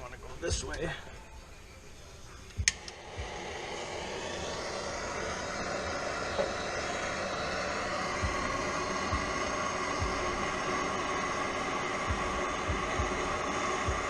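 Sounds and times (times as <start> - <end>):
torch flame hissing: 0.3 - 14.0
torch igniter click: 2.5 - 3.4.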